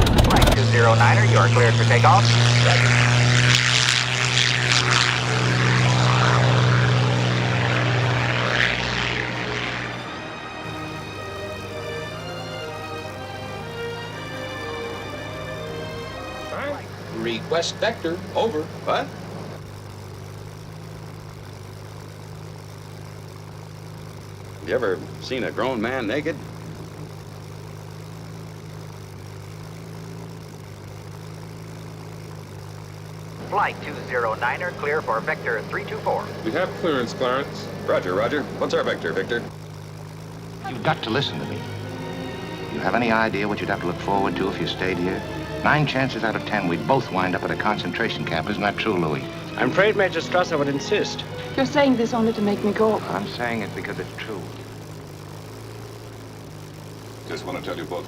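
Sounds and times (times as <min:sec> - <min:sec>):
propeller airliner engines droning: 0:00.0 - 0:58.0.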